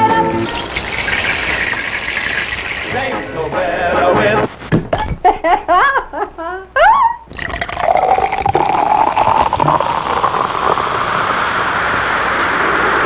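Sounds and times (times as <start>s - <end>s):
rushing water-like noise: 0.4s - 2.9s, 8.1s - 13.0s
person singing: 2.9s - 4.5s.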